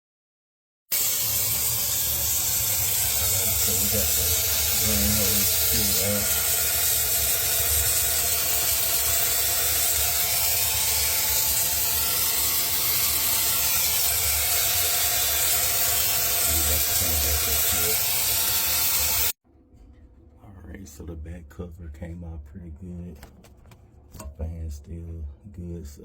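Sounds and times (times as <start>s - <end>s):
loud steady hiss: 0.9s - 19.4s.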